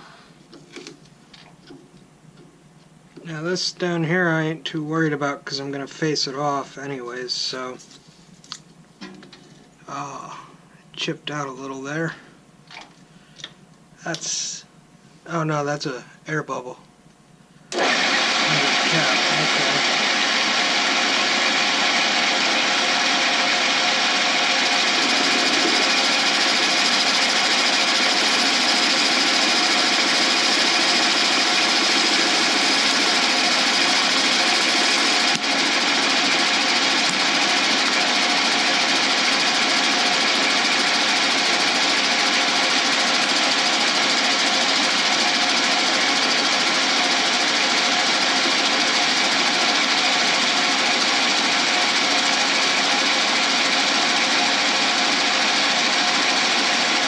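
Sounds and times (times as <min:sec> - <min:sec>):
metal lathe cutting pipe: 0:17.7 - 0:57.0.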